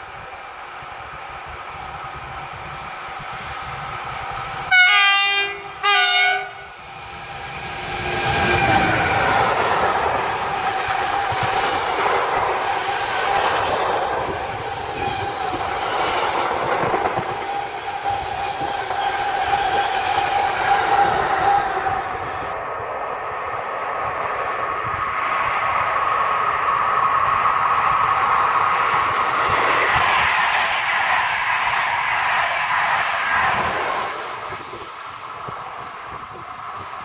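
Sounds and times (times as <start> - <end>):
train wheels rolling on rails: 0.0 - 37.0
train horn blasts: 4.7 - 6.8.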